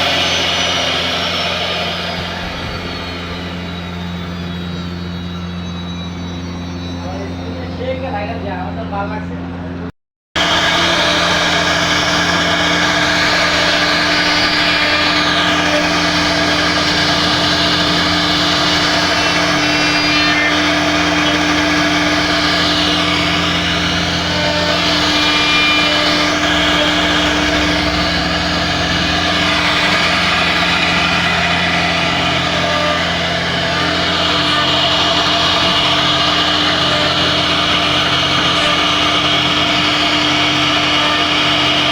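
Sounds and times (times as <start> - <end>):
bit cutting wood: 0.0 - 5.5, 10.4 - 41.9
router spindle motor humming: 0.0 - 9.8, 10.4 - 41.9.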